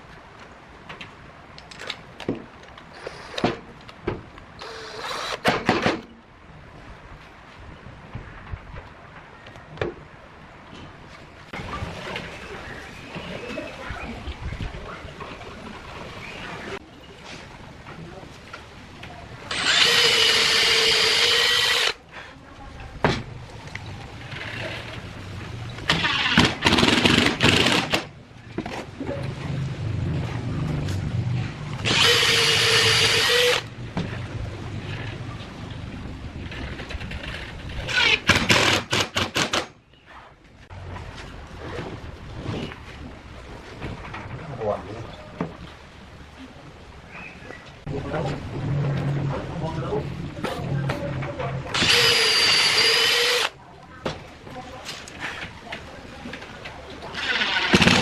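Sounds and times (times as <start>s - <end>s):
rough tool noise in bursts: 4.6s - 5.6s, 19.5s - 22.0s, 31.8s - 33.7s, 51.7s - 53.5s
small motor whirring: 19.5s - 22.0s, 51.8s - 53.5s.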